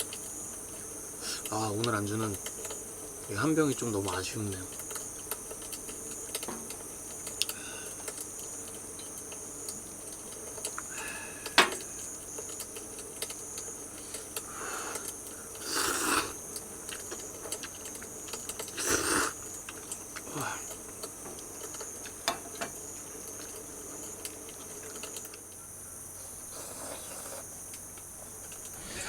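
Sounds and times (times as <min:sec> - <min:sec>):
crickets chirring: 0:00.0 - 0:29.0.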